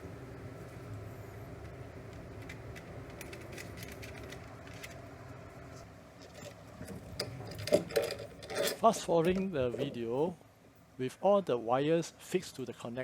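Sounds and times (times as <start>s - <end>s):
steady low hum: 0.0s - 13.0s
screwdriver clicks and scrapes: 7.2s - 8.9s.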